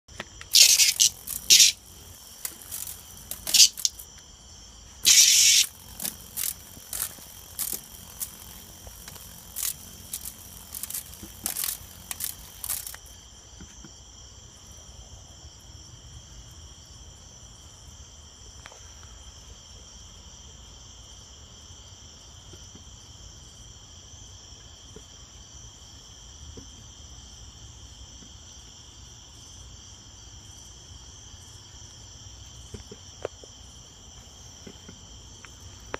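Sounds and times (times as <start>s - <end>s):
cicada buzzy bursts: 0.2s - 13.5s
high-pitched insect trill: 0.3s - 13.5s.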